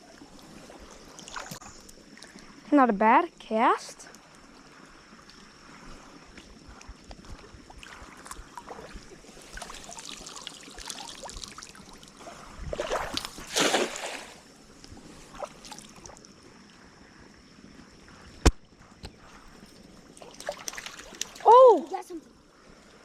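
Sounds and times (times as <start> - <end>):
water splashing and dripping: 0.2 - 2.6, 5.2 - 14.4, 20.1 - 22.2.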